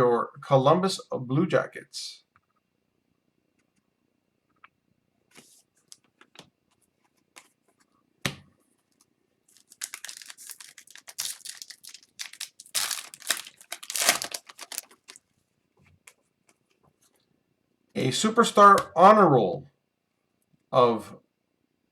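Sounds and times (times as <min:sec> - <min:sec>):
wrapper tearing and crinkling: 0:09.5 - 0:15.2.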